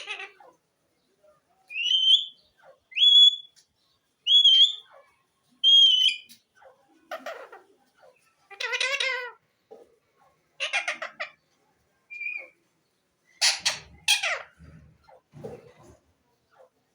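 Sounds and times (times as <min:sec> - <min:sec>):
parrot harsh call: 0:00.0 - 0:00.5, 0:10.6 - 0:11.4
parrot whistling: 0:04.3 - 0:04.8, 0:05.6 - 0:06.3.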